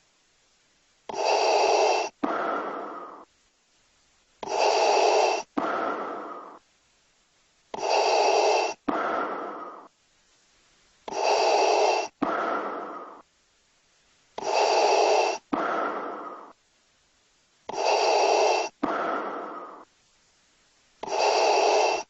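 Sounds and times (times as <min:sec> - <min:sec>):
mechanical respirator breathing: 0:01.1 - 0:03.3, 0:04.4 - 0:06.7, 0:07.7 - 0:10.0, 0:11.0 - 0:13.3, 0:14.4 - 0:16.6, 0:17.7 - 0:19.9, 0:21.0 - 0:22.0.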